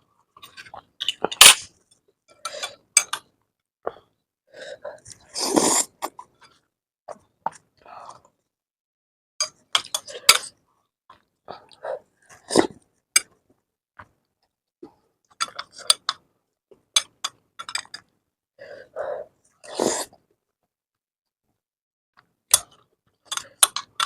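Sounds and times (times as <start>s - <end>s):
person slurping noodles: 4.8s - 6.2s, 11.6s - 12.8s, 19.1s - 20.2s.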